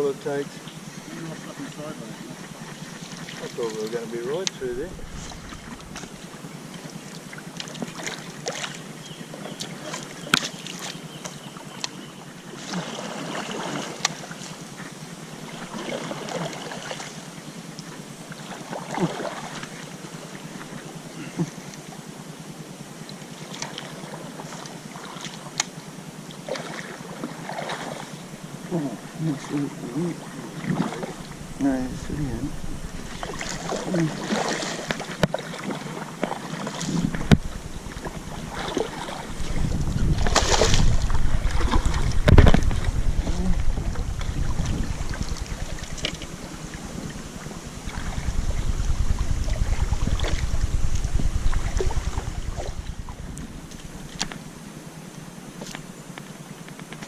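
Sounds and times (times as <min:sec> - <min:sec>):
water sloshing around canoe: 0:00.1 - 0:22.0, 0:23.0 - 0:57.0
wind buffeting microphone: 0:04.6 - 0:06.2, 0:30.7 - 0:35.2, 0:36.8 - 0:54.3
knocks against hull: 0:36.2 - 0:46.3
loud splashes: 0:37.9 - 0:46.8.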